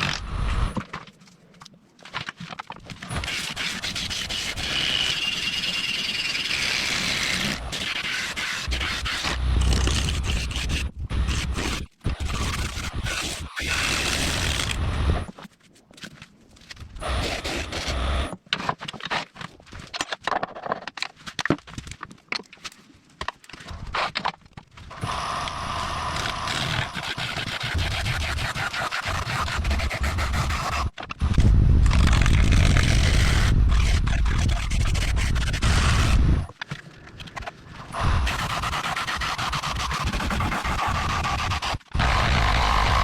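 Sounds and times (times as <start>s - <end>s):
turning tool cutting wood on lathe: 25.0s - 31.0s, 38.0s - 43.0s.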